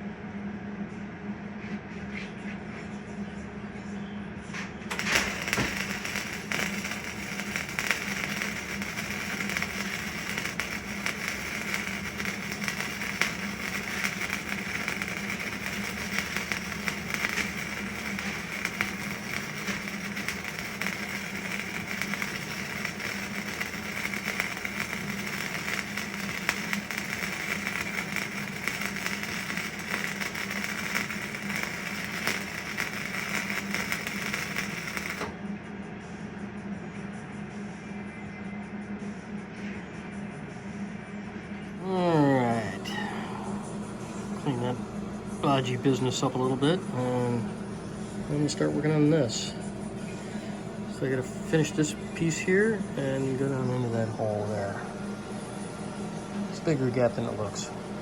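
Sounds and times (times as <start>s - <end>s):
low hum: 2.4s - 58.0s
electric arc welding crackle: 4.9s - 35.4s, 45.4s - 47.5s, 50.4s - 54.8s.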